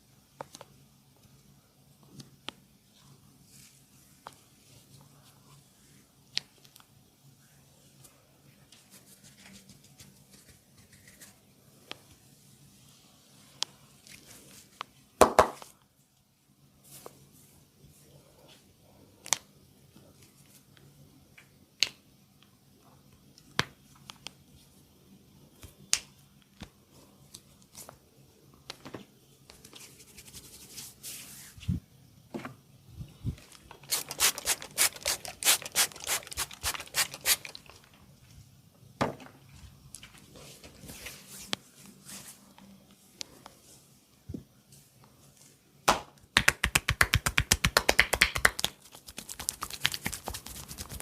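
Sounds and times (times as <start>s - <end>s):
sharp cracking snaps: 46.4s - 51.0s.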